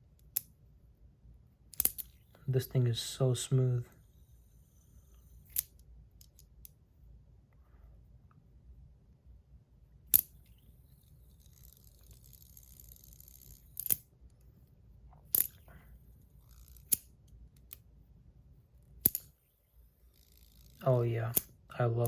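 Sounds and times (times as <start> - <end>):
sharp metallic clicks: 1.7 - 2.2, 16.4 - 17.8
fidget spinner whirring: 1.7 - 3.2, 3.9 - 6.7, 10.1 - 14.6, 15.2 - 17.8, 18.9 - 21.6.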